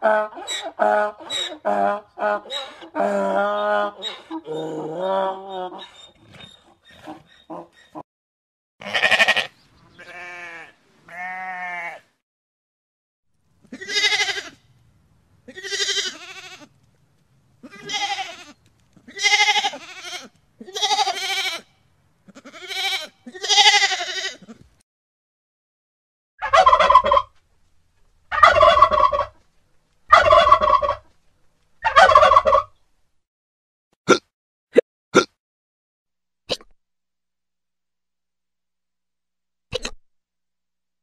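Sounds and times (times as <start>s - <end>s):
turkey gobbling: 0.0s - 8.0s, 26.4s - 27.4s, 28.3s - 29.4s, 30.1s - 31.1s, 31.8s - 32.8s
sheep bleating: 8.8s - 12.1s, 13.7s - 14.6s, 15.5s - 16.7s, 17.6s - 21.7s, 22.3s - 24.7s.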